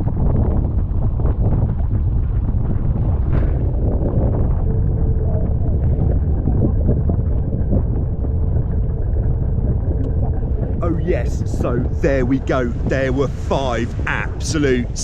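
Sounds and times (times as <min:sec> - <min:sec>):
faint steady whine: 0:00.0 - 0:15.0
wind buffeting microphone: 0:00.0 - 0:15.0
rushing water: 0:10.4 - 0:15.0.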